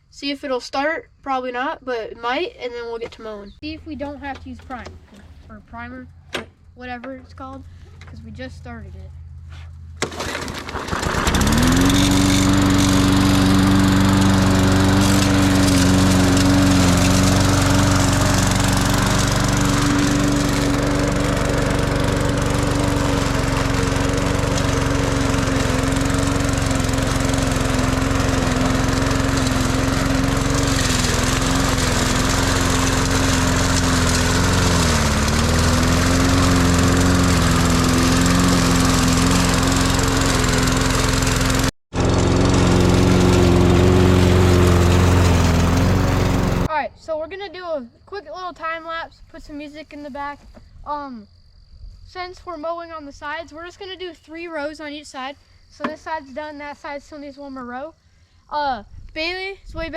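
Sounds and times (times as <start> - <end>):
push mower engine running: 10.0 - 46.7.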